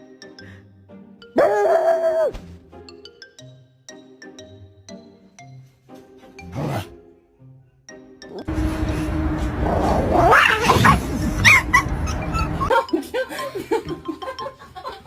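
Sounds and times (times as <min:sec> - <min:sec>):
animal calls gliding in pitch: 0:01.4 - 0:02.4, 0:08.6 - 0:12.7
noisy background: 0:08.5 - 0:12.7.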